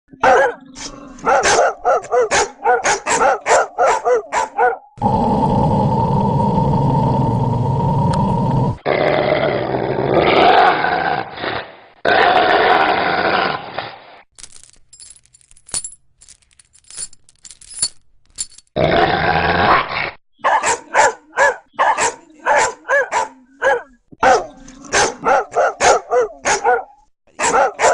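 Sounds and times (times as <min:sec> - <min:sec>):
dog barking sharply: 0:00.2 - 0:00.6, 0:01.2 - 0:04.9, 0:20.4 - 0:27.9.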